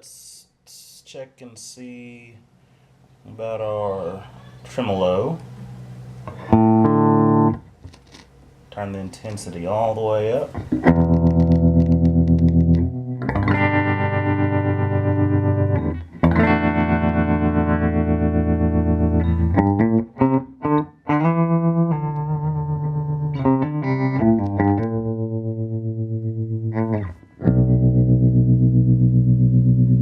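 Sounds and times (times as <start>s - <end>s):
electric guitar chords with tremolo: 5.8s - 7.7s, 10.6s - 30.0s.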